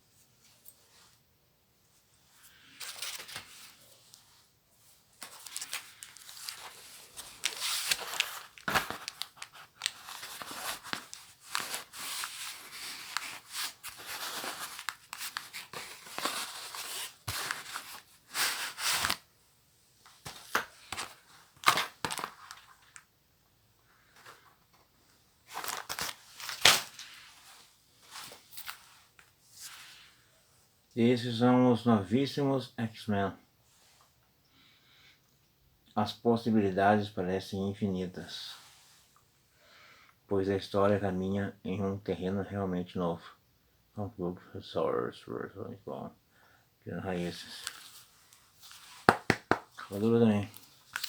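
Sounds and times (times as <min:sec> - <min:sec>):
paper packaging tearing and crumpling: 0:05.2 - 0:19.2, 0:25.5 - 0:27.2, 0:49.0 - 0:51.0
sharp paper snaps: 0:49.0 - 0:49.7.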